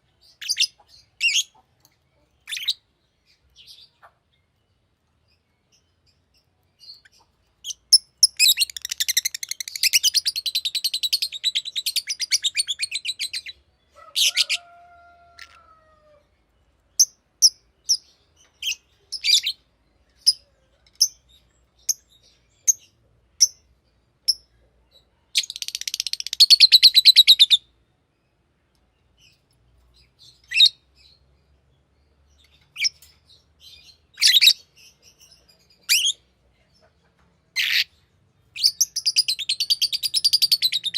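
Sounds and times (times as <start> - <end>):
lovebird chattering: 7.0 - 13.5.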